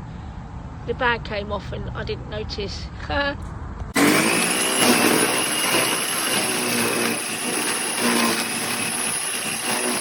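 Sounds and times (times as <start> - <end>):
garden shredder whining and humming: 3.9 - 10.0.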